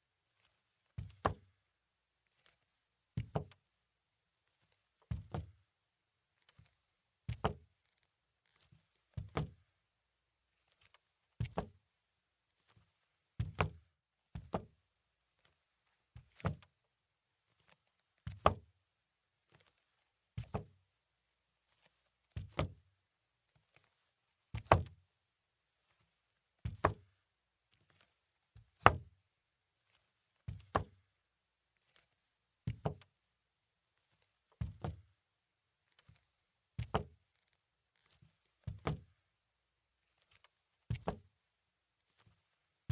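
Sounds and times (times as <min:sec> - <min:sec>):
slow footsteps on wooden floor: 0:30.5 - 0:31.0, 0:32.7 - 0:33.0, 0:36.8 - 0:39.1.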